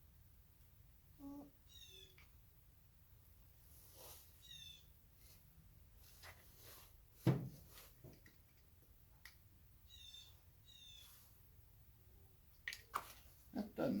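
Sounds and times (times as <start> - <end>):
dull knock on hard surface: 7.2 - 7.6.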